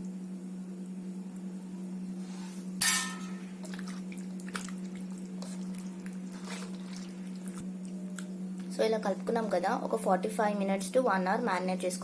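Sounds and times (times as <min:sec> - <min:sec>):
steady low hum: 0:00.0 - 0:12.0
soft squelching of mixing: 0:03.5 - 0:09.7.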